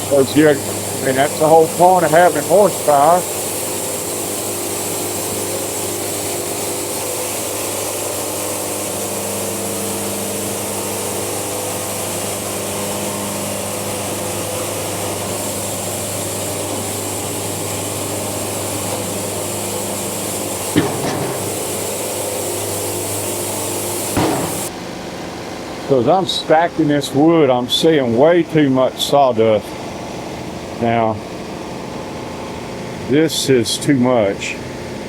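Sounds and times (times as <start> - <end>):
band saw blade cutting log: 0.0 - 24.7
sawmill engine running: 0.0 - 35.0
brief knock: 20.8 - 21.6, 24.2 - 24.7.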